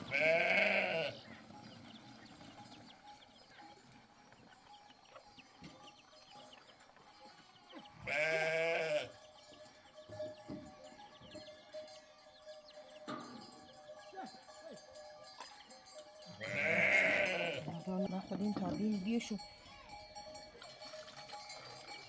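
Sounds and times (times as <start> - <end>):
livestock bleating: 0.0 - 1.4, 7.8 - 9.2, 16.3 - 19.0.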